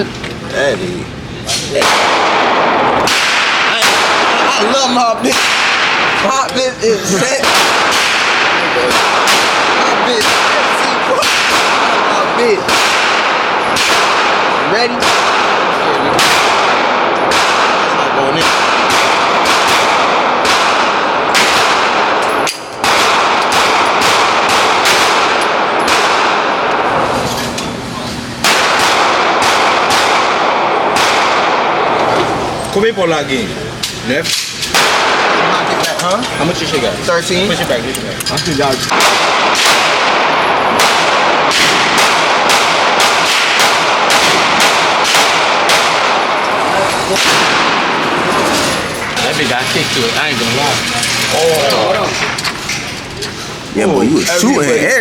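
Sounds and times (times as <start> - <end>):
gunshots: 1.5 - 27.2, 28.4 - 32.2, 34.3 - 36.0, 38.9 - 53.0.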